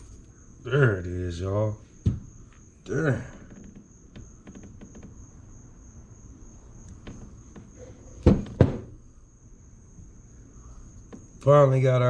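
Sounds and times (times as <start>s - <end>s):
crickets chirring: 0.0s - 12.0s
sharp knocks: 2.0s - 2.4s, 3.3s - 5.3s, 7.0s - 9.0s.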